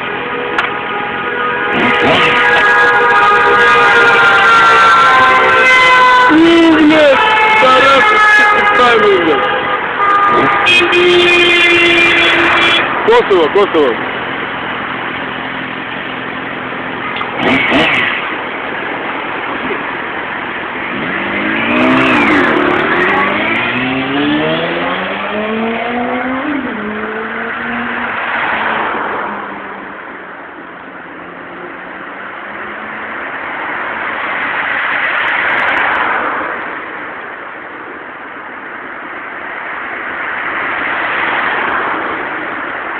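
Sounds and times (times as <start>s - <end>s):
motorcycle engine accelerating: 1.7s - 3.0s, 16.4s - 20.1s, 20.7s - 28.2s.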